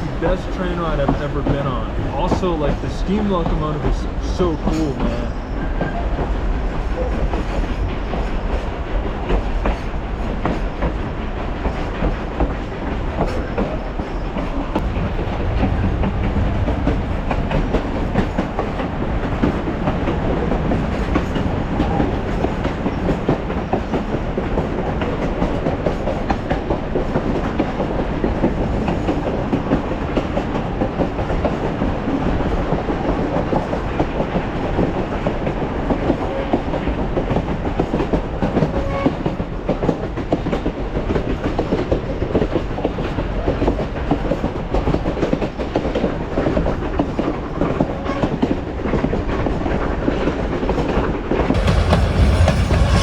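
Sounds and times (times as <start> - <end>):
train cars rattling: 0.0 - 53.0
train wheels clattering on rails: 0.0 - 53.0.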